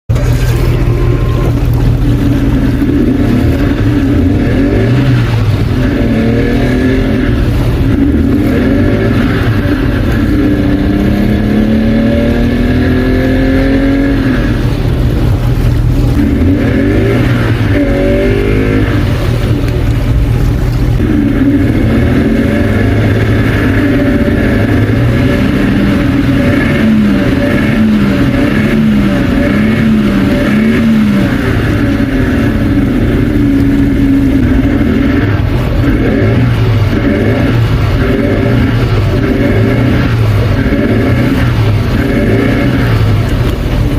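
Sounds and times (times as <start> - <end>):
two-stroke engine revving unevenly: 0.1 - 43.9.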